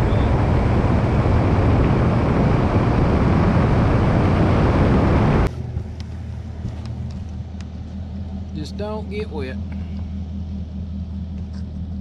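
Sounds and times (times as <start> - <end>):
wind rushing on microphone: 0.0 - 5.5
boat motor hum: 0.0 - 12.0.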